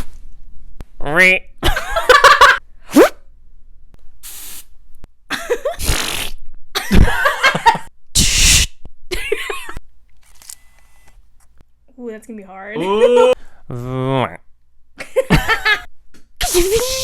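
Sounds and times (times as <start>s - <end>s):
beatbox mouth sounds: 5.8s - 6.4s, 8.2s - 8.8s, 16.4s - 17.0s.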